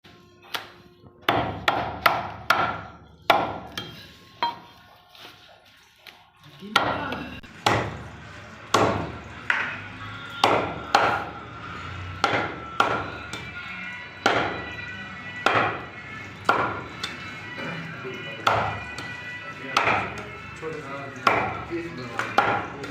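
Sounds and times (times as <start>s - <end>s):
cleaver chopping meat on block: 0.5s - 3.9s, 6.7s - 8.1s, 8.7s - 9.8s, 10.4s - 11.4s, 12.1s - 13.6s, 14.2s - 14.8s, 15.4s - 17.7s, 18.4s - 20.3s, 21.2s - 22.9s.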